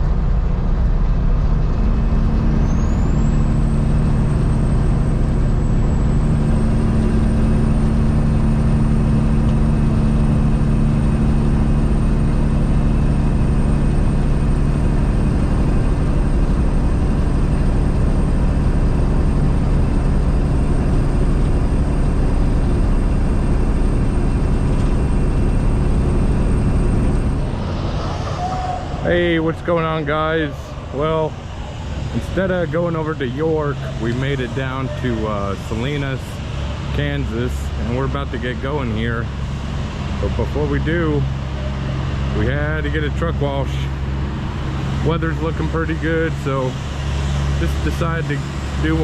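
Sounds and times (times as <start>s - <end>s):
road noise: 0.0s - 49.0s
truck diesel engine running: 0.0s - 49.0s
thin high whine: 24.9s - 33.0s.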